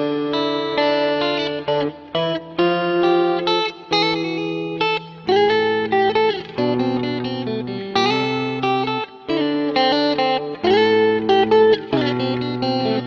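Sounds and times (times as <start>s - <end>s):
electric guitar chords: 0.0s - 13.0s.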